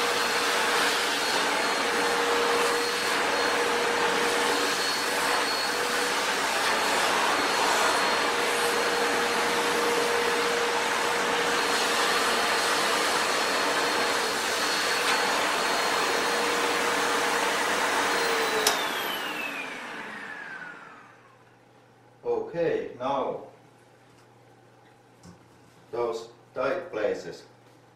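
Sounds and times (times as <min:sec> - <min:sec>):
vacuum cleaner motor whine: 0:00.0 - 0:21.6.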